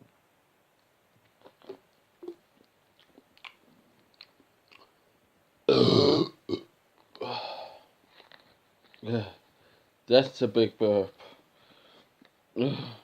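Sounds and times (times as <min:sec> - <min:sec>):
mouth clicks and smacks: 0:00.7 - 0:05.0
loud deep burp: 0:05.7 - 0:06.7.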